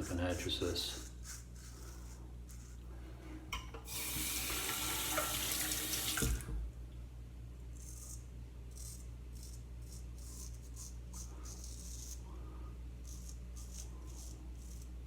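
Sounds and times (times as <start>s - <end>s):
faucet shutting off knock: 3.9s - 6.6s
tap water running into sink: 3.9s - 6.6s.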